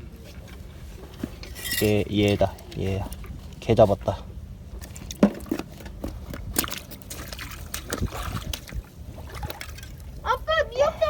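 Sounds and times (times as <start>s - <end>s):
seawater sloshing and splashing: 4.6s - 10.4s
stones knocking together: 5.1s - 6.8s.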